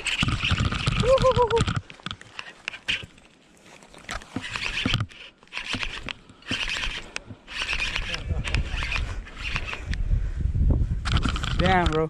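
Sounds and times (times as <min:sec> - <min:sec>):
sharp clicks: 0:00.0 - 0:03.2, 0:04.4 - 0:10.0
spinning reel whirring: 0:00.0 - 0:03.2, 0:04.2 - 0:10.0.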